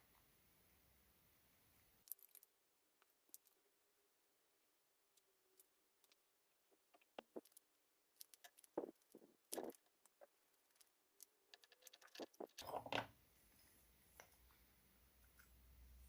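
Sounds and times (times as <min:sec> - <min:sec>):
small hard objects clicking: 0:02.0 - 0:03.6, 0:05.2 - 0:13.0.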